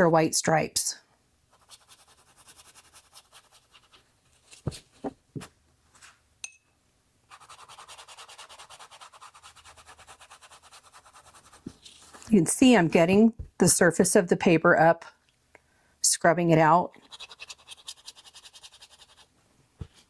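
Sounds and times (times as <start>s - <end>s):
brush scrubbing wet paper: 1.5s - 4.8s, 7.3s - 12.3s, 17.0s - 20.0s.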